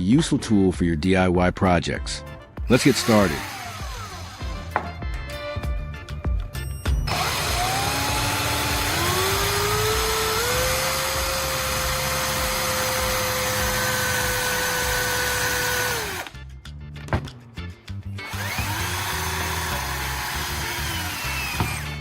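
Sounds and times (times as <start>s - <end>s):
electric power tool motor: 2.8s - 4.8s, 7.1s - 16.3s, 18.2s - 22.0s
background music with a beat: 3.5s - 8.1s, 16.0s - 19.3s.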